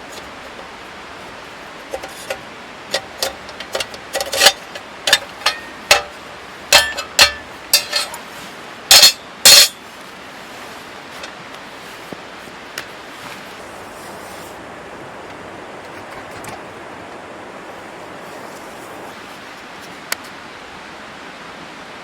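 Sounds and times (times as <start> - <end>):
metallic clinks of camping gear: 0.0 - 9.8
steady outdoor hiss: 0.0 - 22.0.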